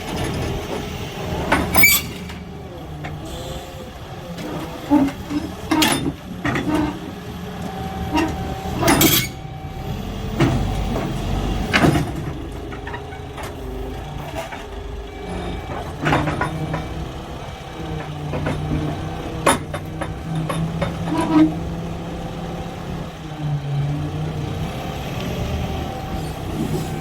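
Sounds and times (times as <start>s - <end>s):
heavy engine running: 0.0s - 27.0s
metallic knocks and clanks: 15.6s - 17.1s.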